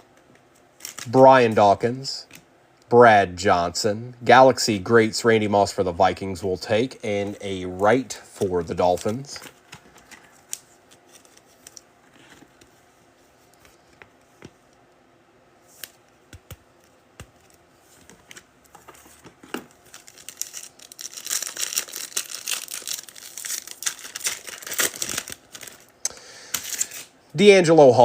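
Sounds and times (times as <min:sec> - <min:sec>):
foil wrapper crinkling and tearing: 0:19.8 - 0:25.9.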